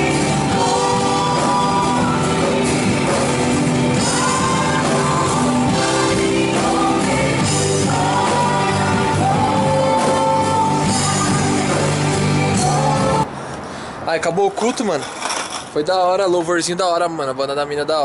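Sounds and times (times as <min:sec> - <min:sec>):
rock band playing: 0:00.0 - 0:13.2
person singing: 0:00.0 - 0:13.3.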